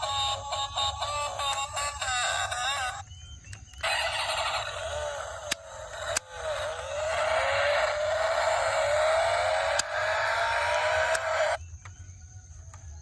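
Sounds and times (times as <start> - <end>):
toy car motor whirring: 0.0 - 3.0, 3.7 - 11.6
sharp clicks: 5.4 - 7.2, 9.0 - 12.0.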